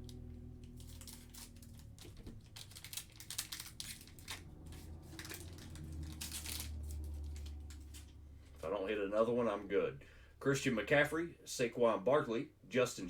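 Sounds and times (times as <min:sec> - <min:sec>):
foil wrapper tearing and crinkling: 0:00.7 - 0:08.1.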